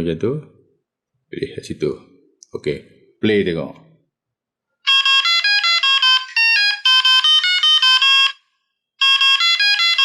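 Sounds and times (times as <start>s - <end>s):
electronic ringtone melody: 4.9s - 10.0s.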